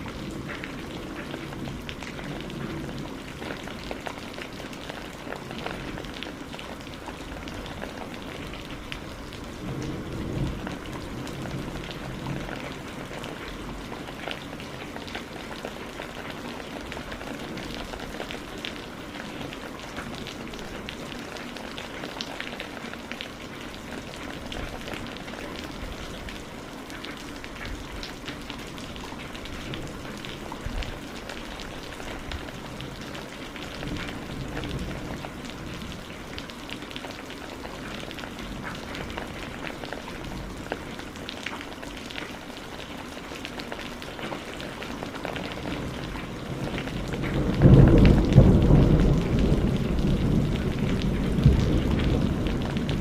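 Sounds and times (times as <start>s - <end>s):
rain falling: 0.0s - 53.0s
raindrop hits: 44.8s - 53.0s.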